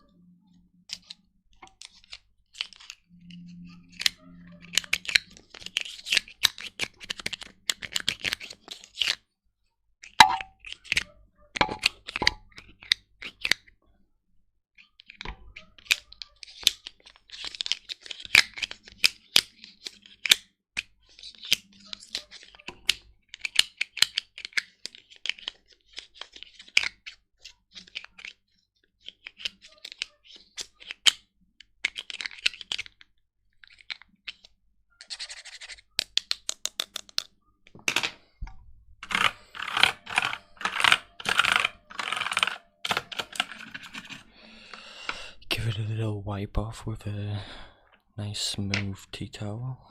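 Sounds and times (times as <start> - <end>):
brush scrubbing a keyboard: 35.0 - 35.9, 39.0 - 44.3
keyboard keys clicking: 39.0 - 44.2.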